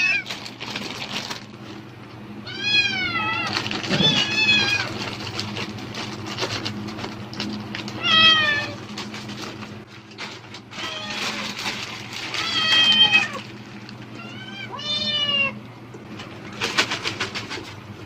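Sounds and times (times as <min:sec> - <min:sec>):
plastic bag crinkling: 0:00.0 - 0:01.8, 0:02.9 - 0:14.6
cat meowing: 0:02.4 - 0:05.0, 0:08.0 - 0:08.8, 0:10.8 - 0:11.5, 0:12.3 - 0:13.4, 0:14.2 - 0:15.6.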